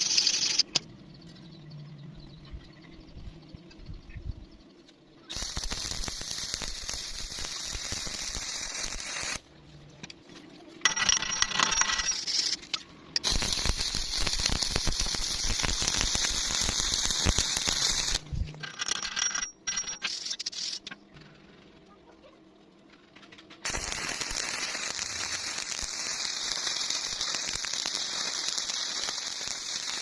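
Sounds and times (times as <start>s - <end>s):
arc welding crackle: 0.0s - 0.8s, 5.3s - 9.5s, 11.0s - 18.6s, 23.6s - 30.0s.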